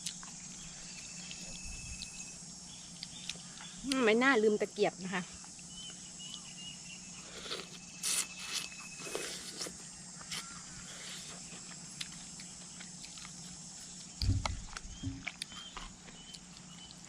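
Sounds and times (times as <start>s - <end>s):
eating clicks and crunches: 0.0s - 4.2s, 7.3s - 17.0s
insects: 0.0s - 17.0s.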